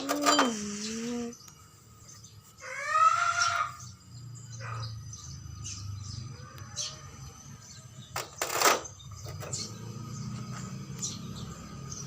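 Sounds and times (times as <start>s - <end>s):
loud bird call: 2.6s - 5.0s.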